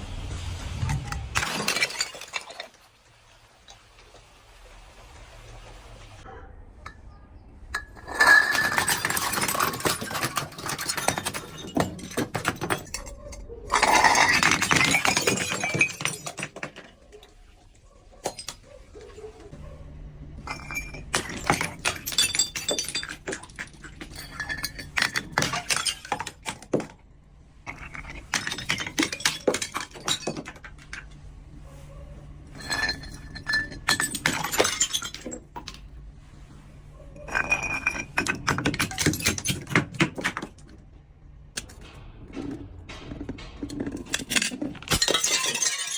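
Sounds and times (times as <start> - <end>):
glass breaking and crunching: 1.4 - 2.8, 7.8 - 13.0, 13.7 - 17.0, 20.4 - 27.0, 27.7 - 31.1, 32.6 - 35.8, 42.9 - 45.9
glass shards clinking: 1.4 - 2.8, 7.8 - 16.9, 20.4 - 26.9, 27.7 - 31.2, 32.5 - 35.8, 37.2 - 40.5, 43.7 - 45.9.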